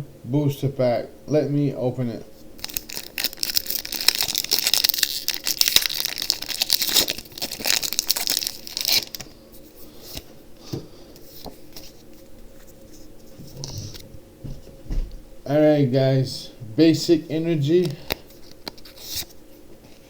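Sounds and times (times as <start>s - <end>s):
foil wrapper tearing and crinkling: 2.6s - 9.3s.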